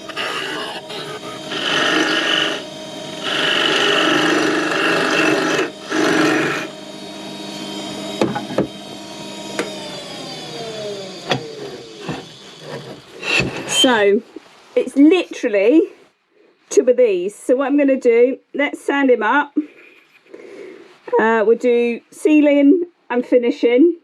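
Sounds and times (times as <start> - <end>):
hand tool scraping workpiece: 0.0 - 6.7, 11.3 - 14.1
wood lathe running: 0.0 - 14.0.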